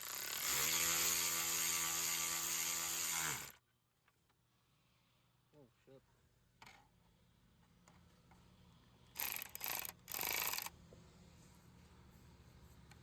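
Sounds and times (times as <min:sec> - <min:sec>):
cordless power driver running: 0:00.0 - 0:03.6, 0:09.2 - 0:10.7.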